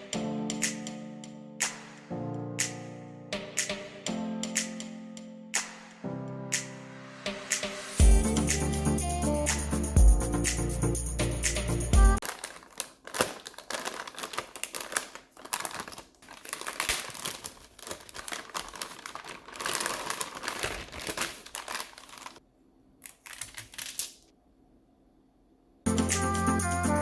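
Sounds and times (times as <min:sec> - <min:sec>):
crinkling and rustling: 0:12.2 - 0:22.4, 0:23.0 - 0:24.3.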